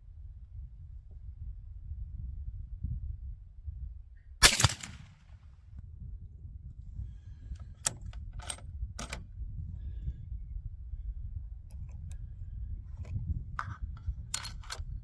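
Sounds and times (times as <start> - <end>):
rifle bolt clicks: 4.4 - 5.0, 7.8 - 9.2, 14.4 - 14.8
suppressed rifle shot: 4.4 - 5.4.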